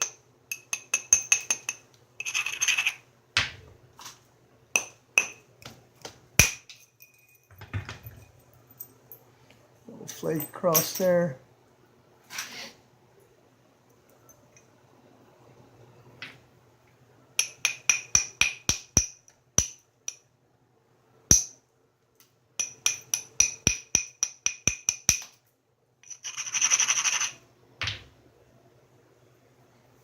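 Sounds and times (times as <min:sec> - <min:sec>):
stone scraping on stone: 0:02.2 - 0:03.0, 0:26.0 - 0:27.4
hammerstone clicking on stone: 0:22.6 - 0:25.4.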